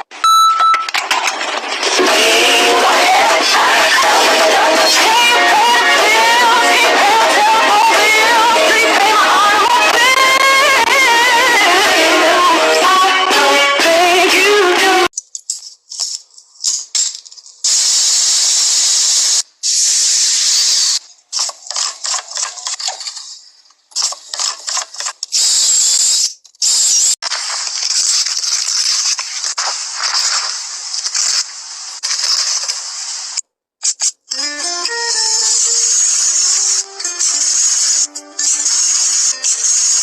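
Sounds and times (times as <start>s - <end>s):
hissing noise: 17.6s - 21.6s.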